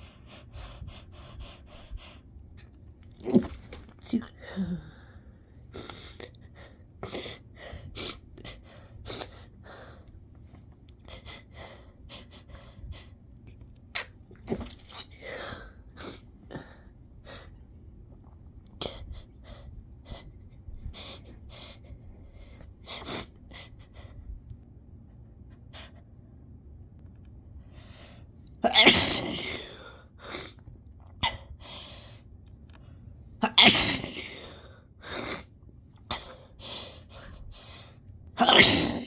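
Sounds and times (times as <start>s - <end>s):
stifled sneezes: 28.6s - 29.9s, 33.4s - 35.5s, 38.4s - 39.0s.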